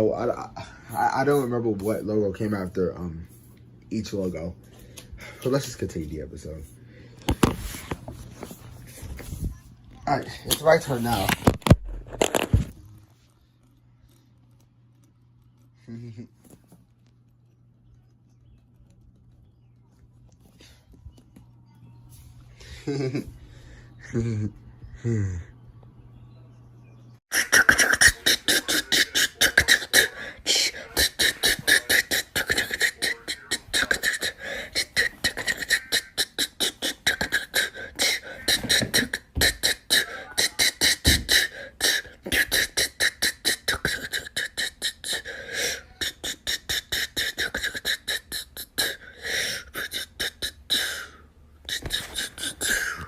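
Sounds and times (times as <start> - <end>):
person making rapid mouth sounds: 27.3 - 53.0.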